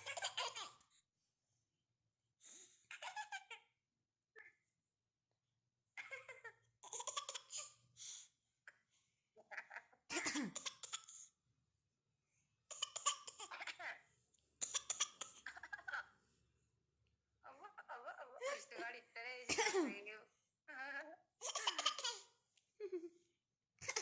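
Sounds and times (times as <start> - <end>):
baby laughing: 0.0 - 0.9, 2.9 - 3.8, 6.0 - 7.8, 9.4 - 11.3, 12.7 - 16.2, 21.4 - 23.1, 23.8 - 24.0
baby imitation coughs: 10.1 - 11.3, 12.7 - 13.6, 14.6 - 15.5, 19.5 - 19.9, 21.4 - 22.3.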